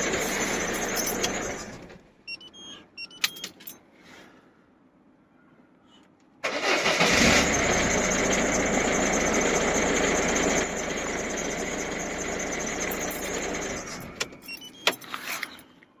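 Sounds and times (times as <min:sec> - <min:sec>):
diesel engine starting and idling: 0:00.0 - 0:02.0, 0:06.4 - 0:14.6.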